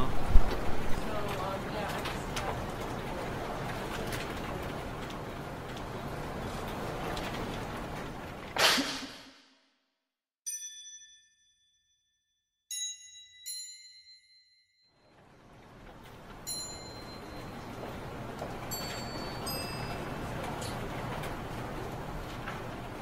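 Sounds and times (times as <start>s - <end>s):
bell-like chime notes: 10.5s - 15.0s, 18.7s - 20.1s.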